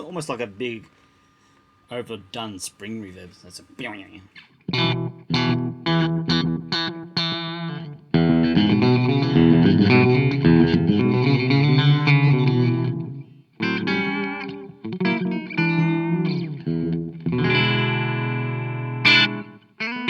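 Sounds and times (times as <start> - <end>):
electric guitar with heavy delay: 4.7 - 20.0.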